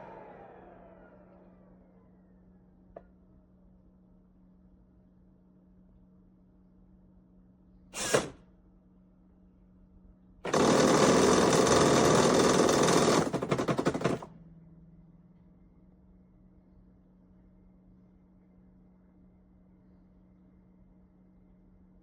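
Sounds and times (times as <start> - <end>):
robot vacuum rushing: 8.0 - 8.4, 10.5 - 14.3.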